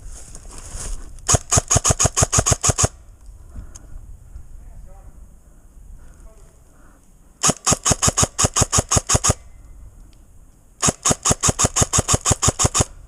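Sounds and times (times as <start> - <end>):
airsoft gun firing rapidly: 1.3 - 3.0, 7.4 - 9.4, 10.8 - 13.0.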